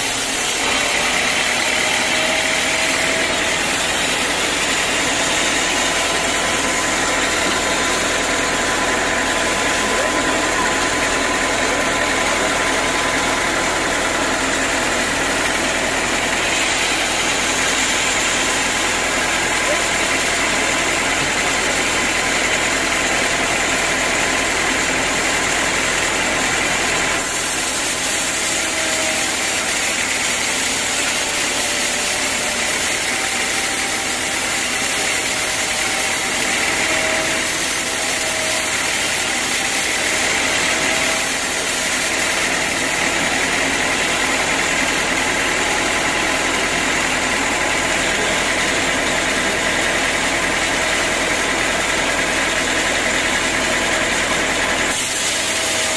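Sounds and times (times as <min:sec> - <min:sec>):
sawmill machinery running: 0:00.0 - 0:55.9.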